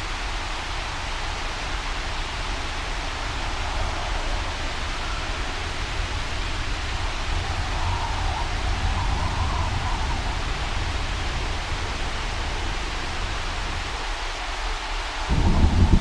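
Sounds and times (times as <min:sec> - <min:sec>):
wind and rain rushing: 0:00.0 - 0:16.0
wavering wind whistle: 0:00.9 - 0:14.3
deep rumble: 0:03.3 - 0:14.2.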